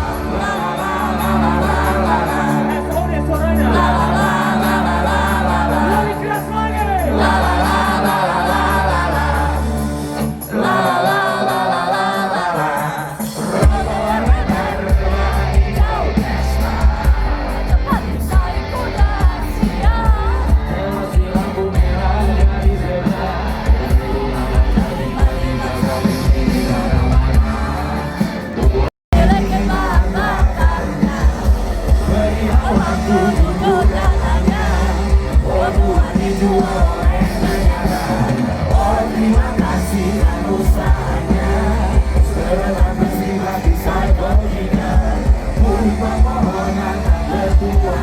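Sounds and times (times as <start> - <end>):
live pop-rock band playing: 0.0 - 48.0
person singing: 7.1 - 48.0
heavy bass beat: 13.6 - 48.0.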